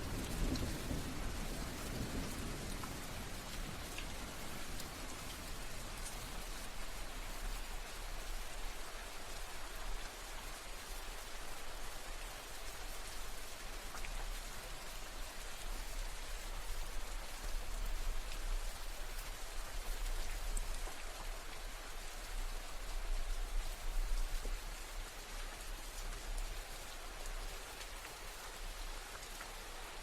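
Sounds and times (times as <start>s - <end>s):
steady rain falling: 0.0s - 30.0s.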